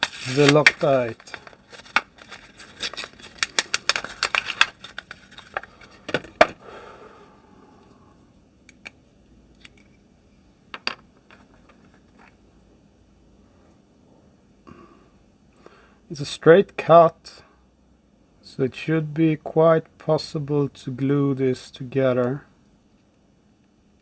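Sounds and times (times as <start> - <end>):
plastic objects clicking and rustling: 0.0 - 6.6
plastic objects knocking: 0.0 - 6.6.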